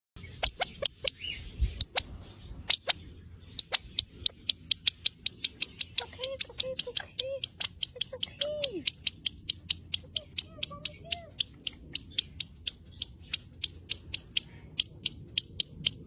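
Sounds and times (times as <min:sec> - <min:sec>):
bird sharp clicking notes: 0:03.6 - 0:16.0.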